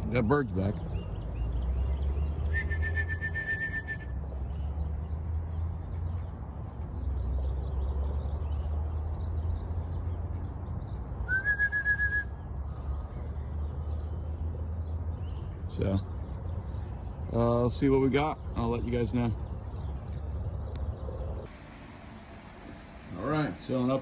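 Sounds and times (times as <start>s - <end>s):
whistled bird calls with trill: 2.4s - 4.2s, 11.2s - 12.4s.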